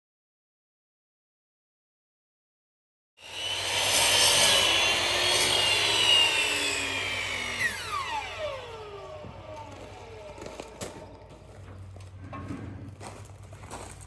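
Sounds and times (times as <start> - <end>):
power saw motor whine: 3.2 - 12.4.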